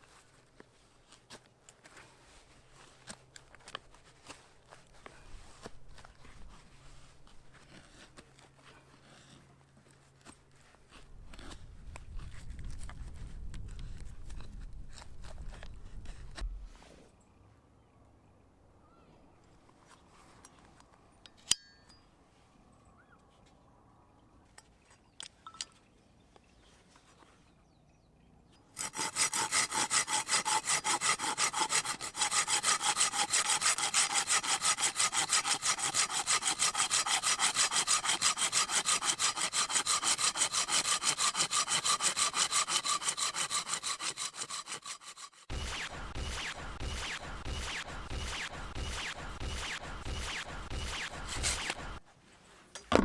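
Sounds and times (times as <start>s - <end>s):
hand saw cutting wood: 28.8s - 52.0s.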